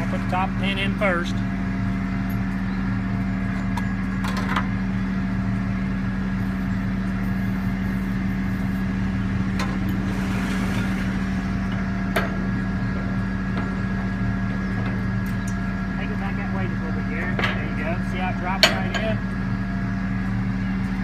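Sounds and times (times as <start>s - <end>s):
diesel engine idling: 0.0s - 21.0s.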